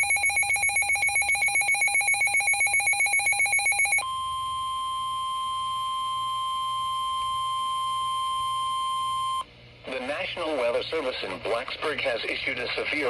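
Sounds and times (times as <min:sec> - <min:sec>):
warbling electronic alert tone: 0:00.0 - 0:05.6
steady high tone: 0:00.0 - 0:09.4.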